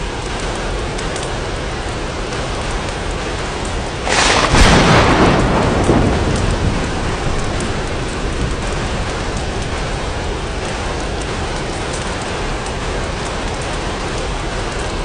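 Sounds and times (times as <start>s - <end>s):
rain pattering on glass: 0.0s - 15.0s
thunder clap rumbling: 0.0s - 15.0s.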